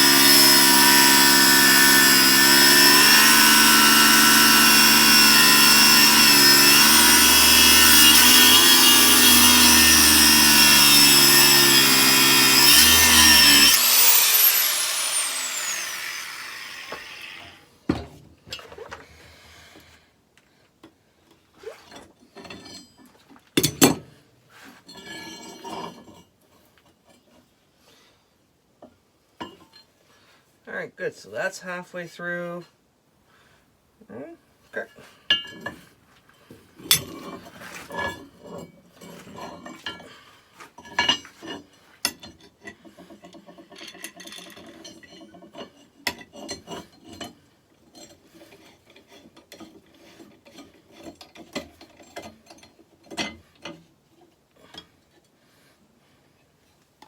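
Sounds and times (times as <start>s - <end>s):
power tool cutting steel: 0.0s - 17.6s.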